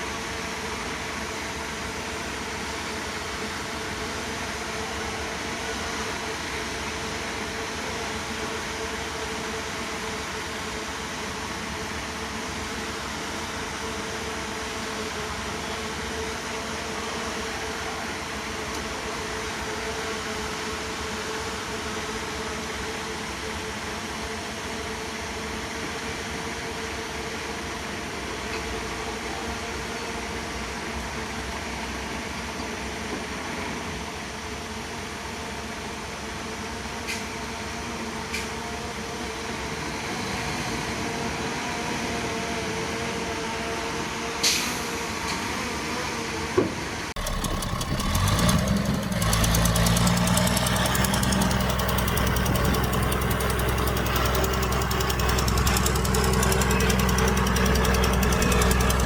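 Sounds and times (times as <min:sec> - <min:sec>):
diesel engine running: 0:47.2 - 0:59.0.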